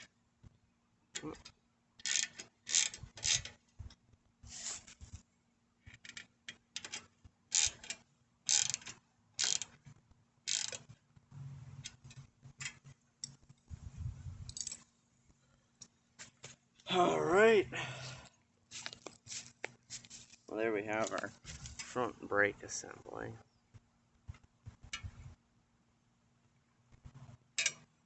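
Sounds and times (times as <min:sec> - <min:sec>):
ratchet wrench clicking: 0:02.0 - 0:03.5, 0:06.8 - 0:09.8, 0:10.5 - 0:10.9, 0:14.5 - 0:14.8, 0:27.6 - 0:27.8.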